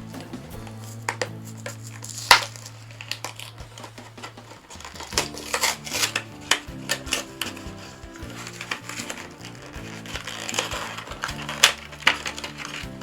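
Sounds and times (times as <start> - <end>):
faint background music: 0.0 - 13.0
plastic packaging crackling: 0.0 - 13.0.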